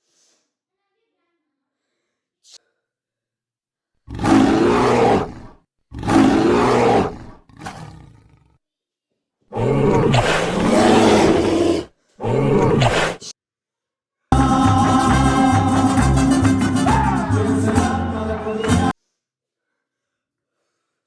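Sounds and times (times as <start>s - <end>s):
loud roaring: 4.1s - 8.4s, 9.6s - 13.2s
growl: 4.1s - 8.6s, 9.5s - 13.2s.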